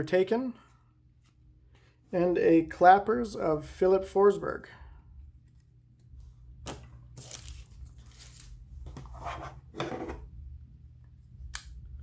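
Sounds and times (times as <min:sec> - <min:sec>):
cards and wrappers rustling: 0:05.4 - 0:09.2.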